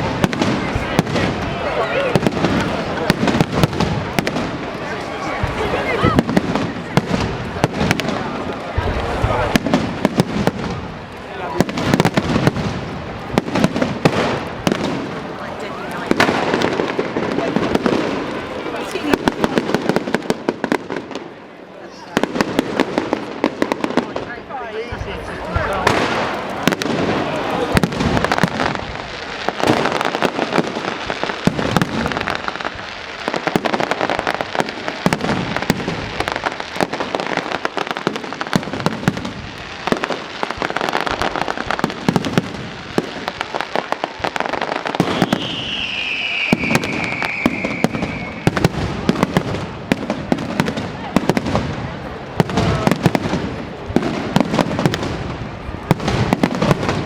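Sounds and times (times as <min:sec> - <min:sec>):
fireworks bangs and crackles: 0:00.0 - 0:57.0
firework whistle falling in pitch: 0:45.0 - 0:48.5.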